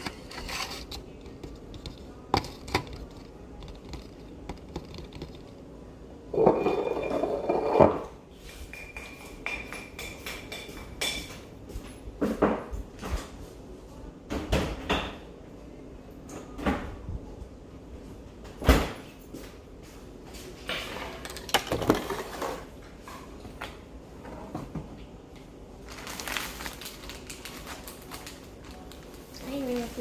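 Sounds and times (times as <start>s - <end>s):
kitchen items knocking and clattering: 0.0s - 13.3s, 14.3s - 15.3s, 20.6s - 23.6s.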